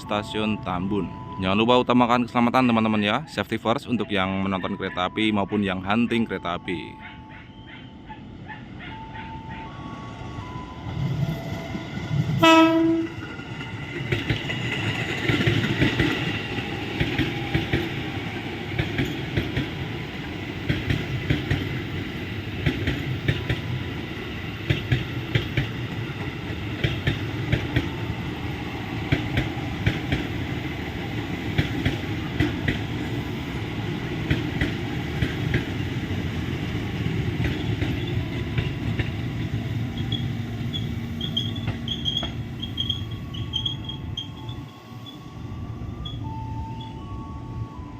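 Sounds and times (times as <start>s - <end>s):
train rumbling: 0.0s - 47.9s
wheels clacking over rail joints: 11.9s - 20.0s, 22.5s - 28.2s, 33.8s - 44.5s
train horn blast: 12.3s - 13.2s.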